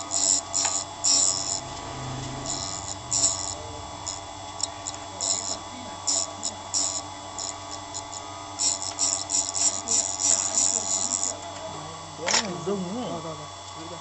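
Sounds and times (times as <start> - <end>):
high-pitched grinding bursts: 0.0 - 11.4
grinding machine humming: 0.0 - 14.0.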